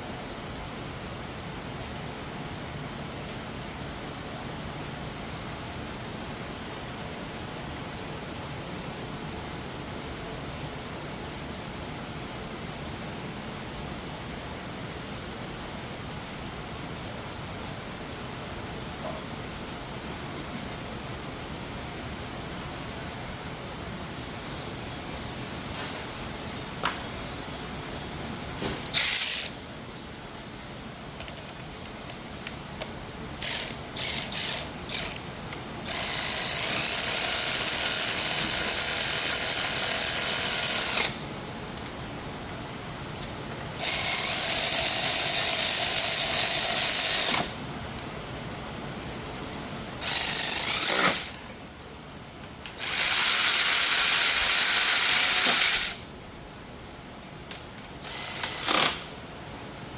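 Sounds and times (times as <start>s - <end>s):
power ratchet running bolts: 29.0s - 29.6s, 33.4s - 35.3s, 35.9s - 41.2s, 43.8s - 47.6s, 50.0s - 51.6s, 52.7s - 56.0s, 58.0s - 59.1s.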